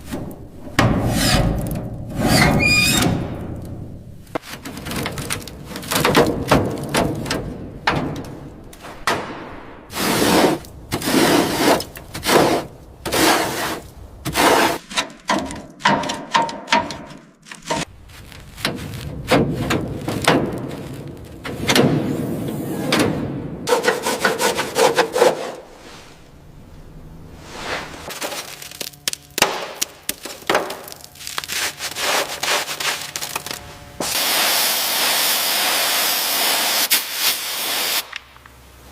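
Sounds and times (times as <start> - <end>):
rubbing and scraping strokes: 9.9 - 14.8, 23.7 - 26.4, 30.9 - 34.2.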